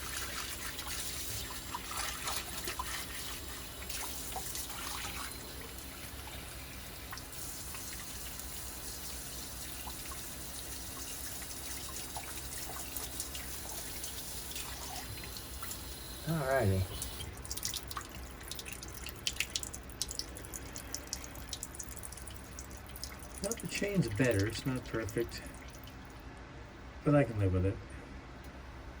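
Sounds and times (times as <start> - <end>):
water running from a tap: 0.0 - 26.2.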